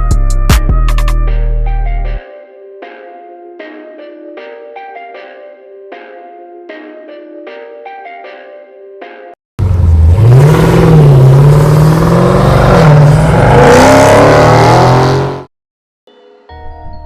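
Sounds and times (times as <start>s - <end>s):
car engine revving: 9.6s - 15.5s.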